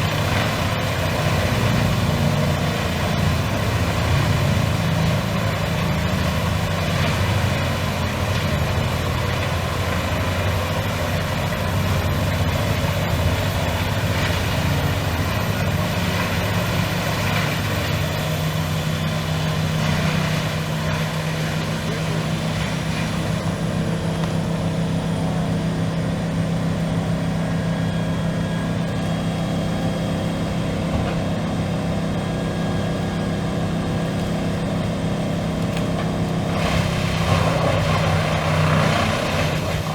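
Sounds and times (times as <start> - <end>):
shredder diesel engine running: 0.0 - 39.9
harsh grinding noise: 35.3 - 39.9.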